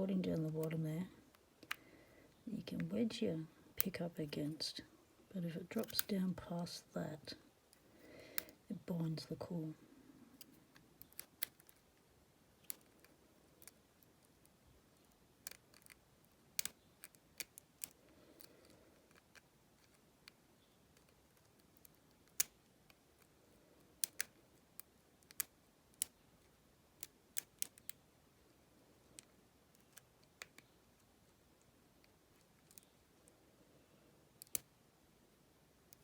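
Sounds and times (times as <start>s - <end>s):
lock pick clicking in padlock: 24.0s - 24.4s.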